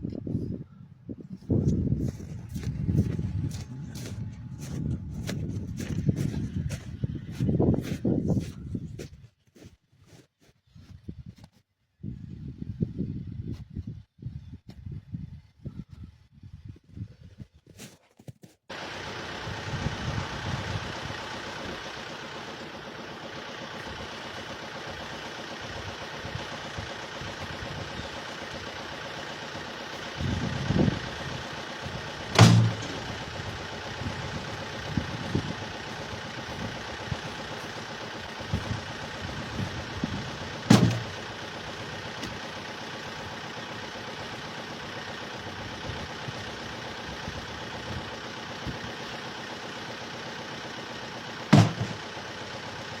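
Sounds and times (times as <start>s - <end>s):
engine running: 1.2s - 9.2s, 18.7s - 53.0s
low thuds: 32.3s - 35.7s, 38.4s - 41.2s
sharp knocks: 32.4s - 32.9s, 40.7s - 41.1s, 51.6s - 52.0s.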